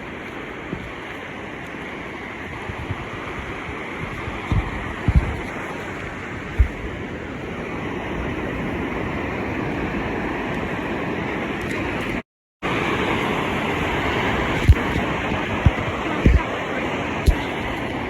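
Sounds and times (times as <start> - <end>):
ocean surf washing onto beach: 0.0 - 18.0
wind buffeting microphone: 0.0 - 18.0.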